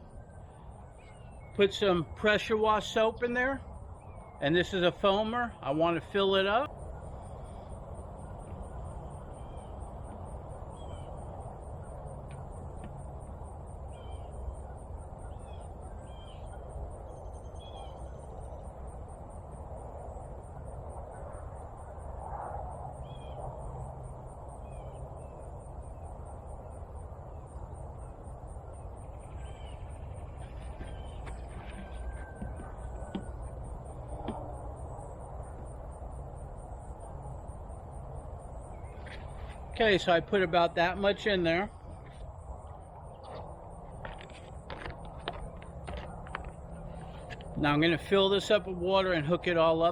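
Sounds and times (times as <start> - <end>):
birds chirping: 0.0 - 20.3, 23.0 - 49.9
low background rumble: 0.0 - 48.8.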